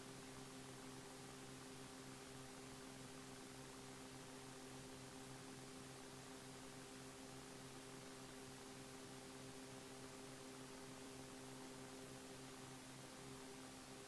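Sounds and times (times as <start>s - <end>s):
faint steady hiss: 0.0s - 14.0s
low electrical hum: 0.0s - 14.0s.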